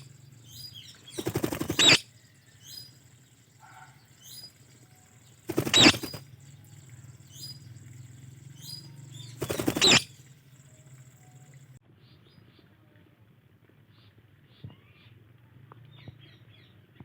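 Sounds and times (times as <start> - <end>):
faint falling chirps: 0.0 - 11.8.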